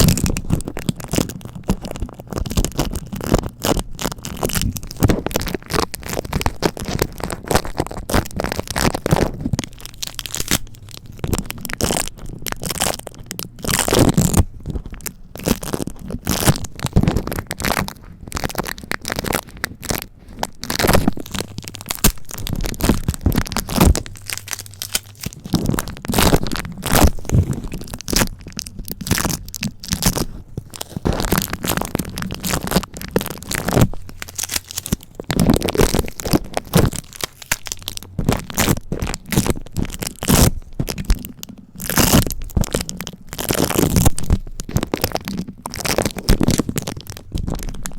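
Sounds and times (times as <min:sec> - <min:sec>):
adhesive tape crackling and popping: 0:00.0 - 0:47.9.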